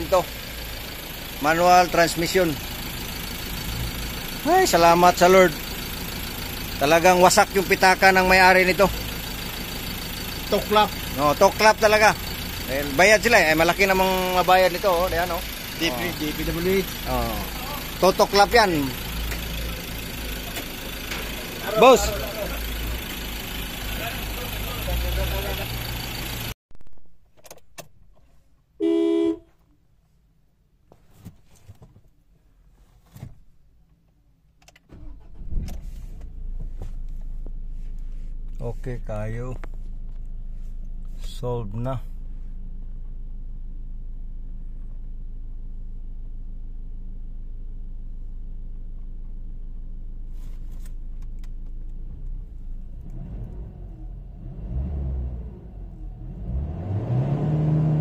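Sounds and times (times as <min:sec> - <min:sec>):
engine starting and running: 0:00.0 - 0:26.6, 0:34.6 - 0:41.4, 0:42.0 - 0:58.0
car horn beep: 0:28.8 - 0:29.5.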